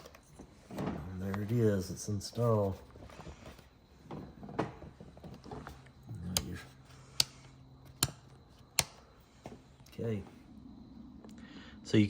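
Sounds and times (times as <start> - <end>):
soft handling sounds: 0.0 - 10.5
plastic switch clicks: 6.3 - 6.6, 7.2 - 9.0.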